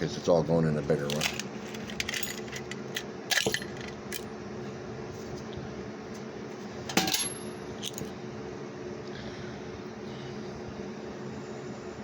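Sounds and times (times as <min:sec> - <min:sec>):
metal items clinking and clattering: 0:01.0 - 0:04.2, 0:06.9 - 0:08.1.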